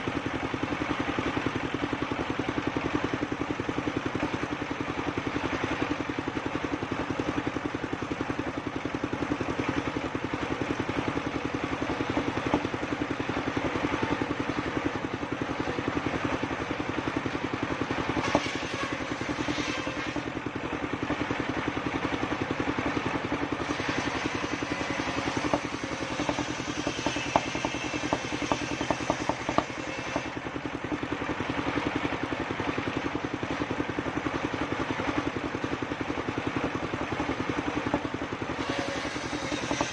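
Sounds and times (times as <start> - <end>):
sawmill engine running: 0.0 - 39.9
sharp knocks: 25.2 - 30.3, 39.4 - 39.9.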